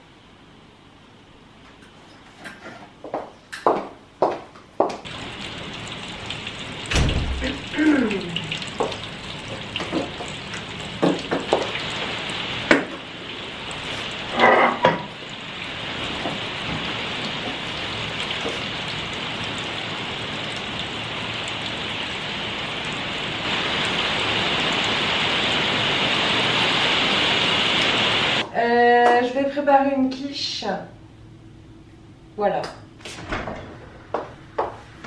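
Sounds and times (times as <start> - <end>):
heavy rain falling: 5.1 - 14.4, 15.1 - 28.4.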